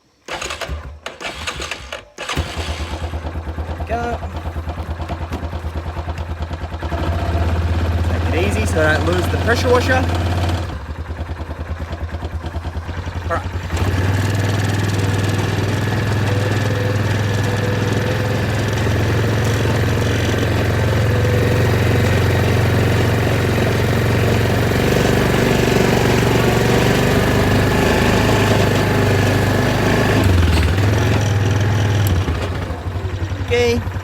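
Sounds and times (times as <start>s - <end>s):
quad bike engine running: 0.3s - 34.0s.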